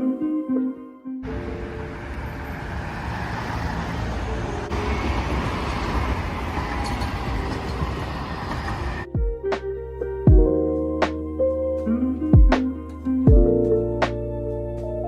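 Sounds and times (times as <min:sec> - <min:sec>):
soft background music: 0:00.0 - 0:02.6, 0:09.1 - 0:15.0
road vehicle rumble: 0:01.2 - 0:09.1.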